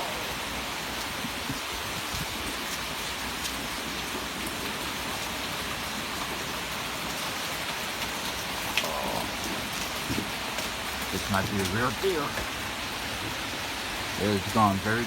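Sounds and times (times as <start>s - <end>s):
heavy rain falling: 0.0s - 15.0s
raindrop hits: 7.0s - 13.4s.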